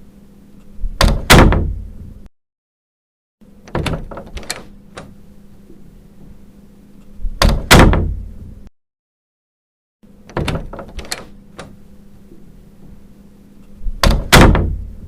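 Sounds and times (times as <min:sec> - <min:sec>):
faint steady hum: 0:00.0 - 0:02.3, 0:03.4 - 0:08.7, 0:10.0 - 0:15.0
door closing thud: 0:00.8 - 0:02.0, 0:03.7 - 0:05.1, 0:07.2 - 0:08.3, 0:10.3 - 0:11.8, 0:13.8 - 0:15.0
door latch clicks: 0:03.6 - 0:05.2, 0:10.3 - 0:11.8, 0:14.0 - 0:14.9.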